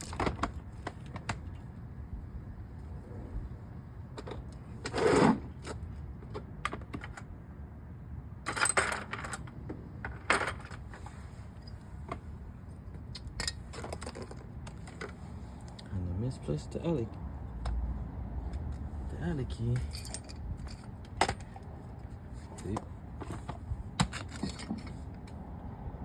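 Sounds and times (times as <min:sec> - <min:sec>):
metal tools clinking and rattling: 0:08.5 - 0:09.5, 0:13.1 - 0:15.2, 0:19.4 - 0:21.6, 0:22.4 - 0:25.2.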